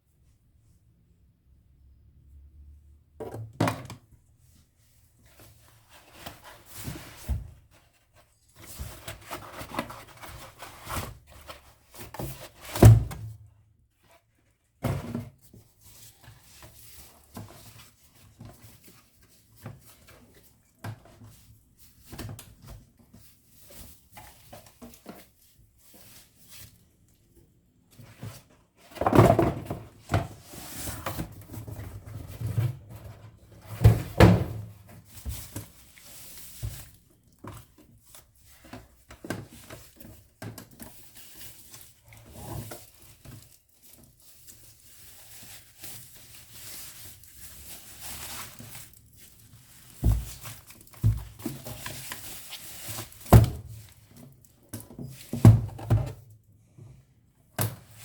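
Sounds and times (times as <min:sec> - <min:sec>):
thuds and knocks of packaging: 0:28.9 - 0:35.6, 0:49.9 - 0:54.0, 0:54.8 - 0:56.2.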